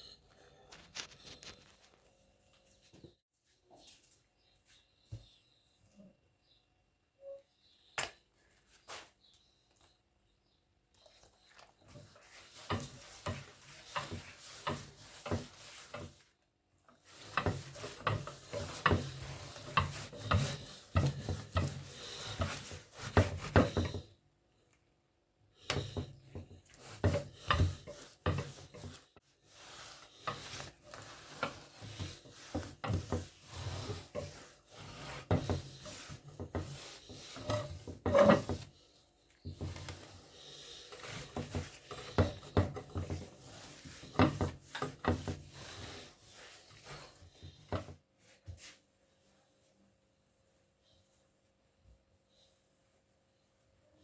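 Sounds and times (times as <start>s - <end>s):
objects knocking and rubbing: 11.5s - 16.3s, 16.9s - 24.2s, 25.6s - 38.8s, 39.4s - 48.0s.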